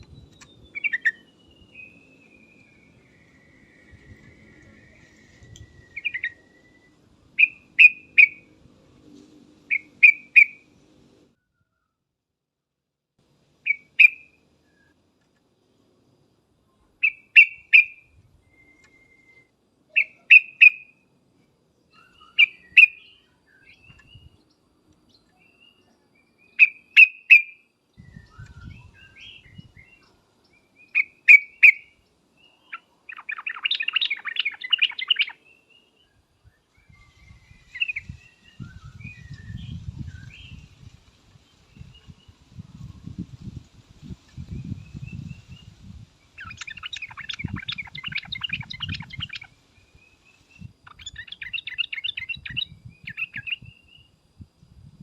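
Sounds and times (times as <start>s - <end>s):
bulbul calling: 0.0s - 8.5s, 9.7s - 10.7s, 13.6s - 14.4s, 17.0s - 18.1s, 19.9s - 21.0s, 21.9s - 24.3s, 26.5s - 30.1s, 30.8s - 35.5s, 46.4s - 53.9s.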